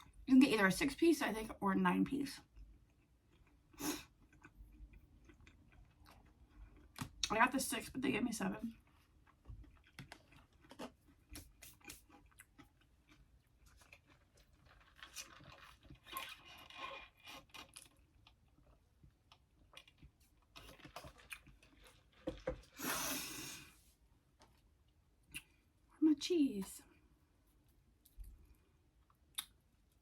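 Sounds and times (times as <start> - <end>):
crunchy chewing: 8.8 - 22.8
wet mouth clicks: 25.3 - 25.6, 29.3 - 29.6.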